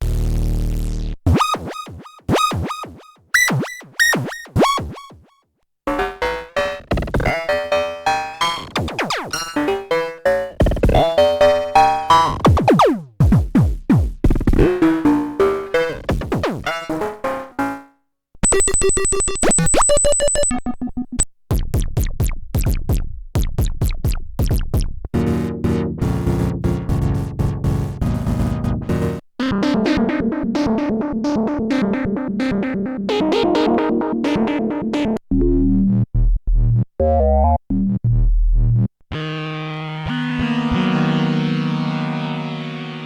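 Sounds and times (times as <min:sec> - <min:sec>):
synthesizer playing: 0:05.9 - 0:12.8, 0:25.3 - 0:35.2, 0:39.2 - 0:43.0.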